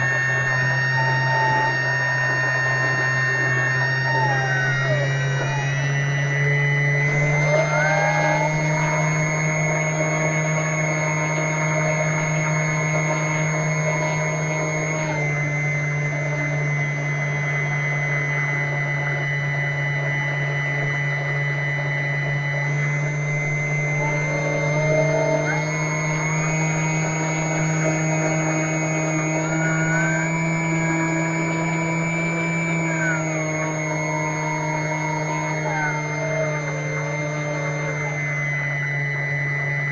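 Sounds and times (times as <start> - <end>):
low hum: 0.0 - 39.9
model plane electric motor whine: 0.0 - 39.9.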